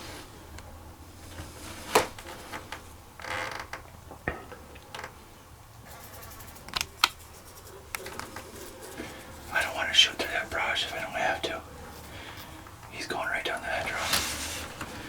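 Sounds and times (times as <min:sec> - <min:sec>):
gear creaking: 0:01.3 - 0:03.9
sharp clicks of gear: 0:06.7 - 0:07.2.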